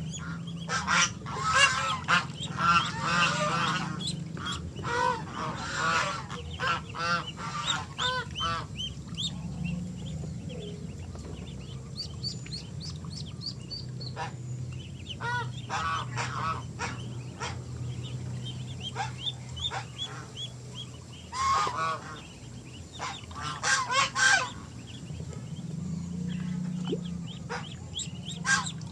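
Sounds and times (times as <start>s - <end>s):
steady low hum: 0.0s - 28.9s
goose honking: 0.1s - 9.4s, 14.1s - 14.4s, 15.1s - 25.0s, 27.3s - 28.9s.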